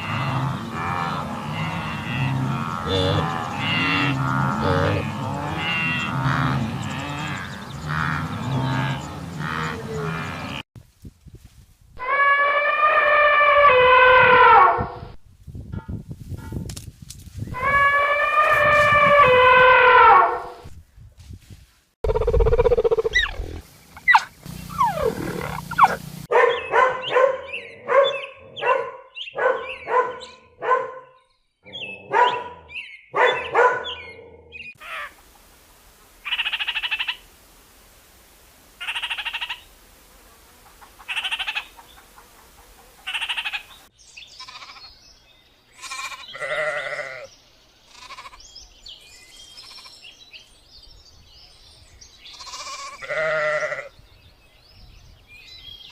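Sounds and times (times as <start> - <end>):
farm animals bleating: 0.0 - 10.6, 23.4 - 26.0, 41.1 - 41.7, 43.0 - 43.6, 44.3 - 45.0, 45.7 - 47.3, 47.9 - 48.6, 49.5 - 50.1, 52.2 - 54.0.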